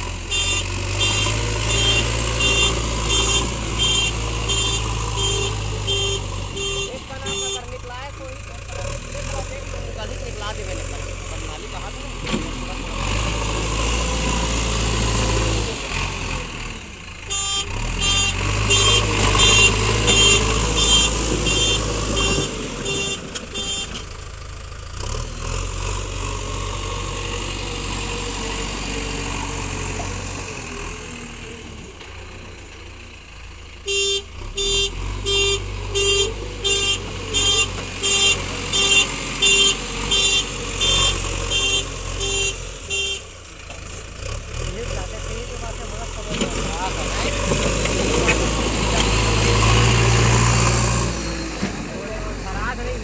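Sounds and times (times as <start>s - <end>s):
diesel engine rumbling: 0.0s - 53.0s
reversing alarm beeping: 0.4s - 7.8s.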